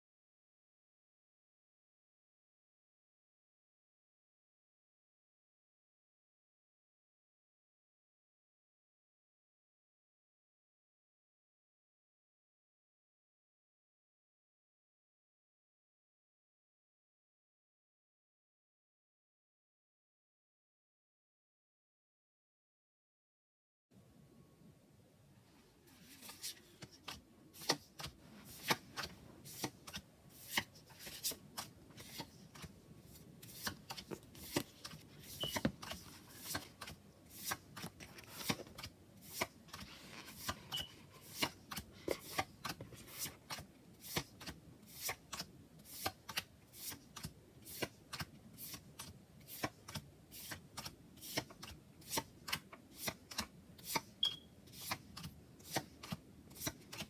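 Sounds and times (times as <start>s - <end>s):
soft papery rustle: 25.4s - 44.5s.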